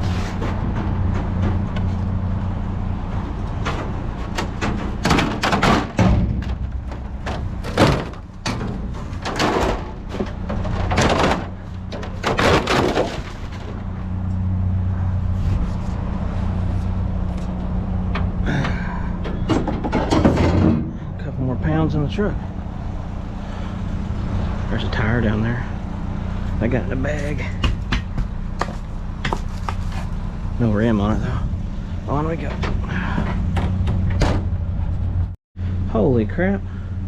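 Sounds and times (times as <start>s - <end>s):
scrap knocking and clanking: 0.0s - 21.3s, 27.0s - 30.2s, 32.4s - 35.4s
vehicle engine idling: 0.0s - 37.0s.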